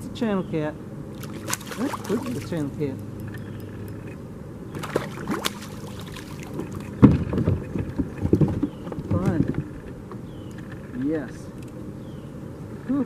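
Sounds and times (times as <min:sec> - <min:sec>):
knocks and bumps against kayak: 0:04.8 - 0:10.8.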